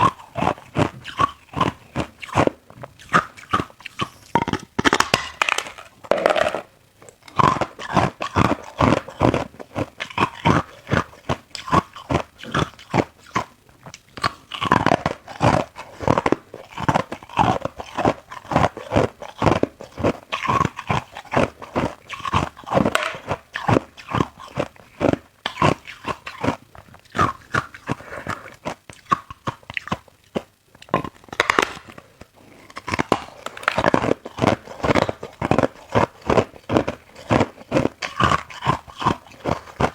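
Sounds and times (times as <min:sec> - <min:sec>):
person crunching ice: 0:14.2 - 0:27.3, 0:32.7 - 0:39.9.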